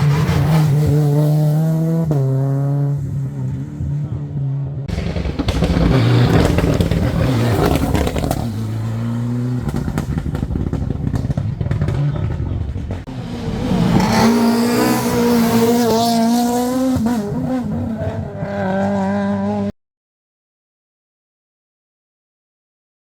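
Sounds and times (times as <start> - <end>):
rally car engine revving: 0.0 - 19.7
engine crackles: 4.9 - 18.6.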